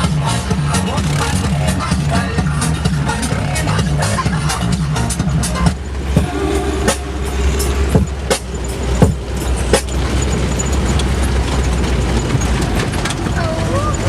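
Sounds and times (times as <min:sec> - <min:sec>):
vehicle rumble from inside: 0:00.0 - 0:14.0
sharp knocks and rattles: 0:07.3 - 0:14.0.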